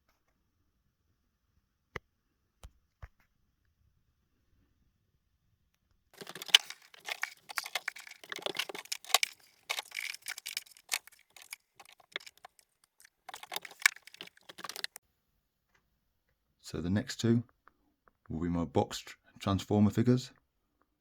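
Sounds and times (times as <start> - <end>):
handling clicks and rustles: 6.2 - 15.0.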